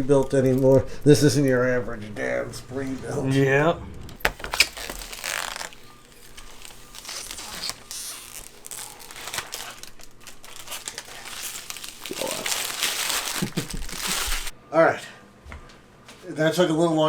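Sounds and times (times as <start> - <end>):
crinkling and rustling handling noise: 0.0 - 3.3, 4.2 - 14.6.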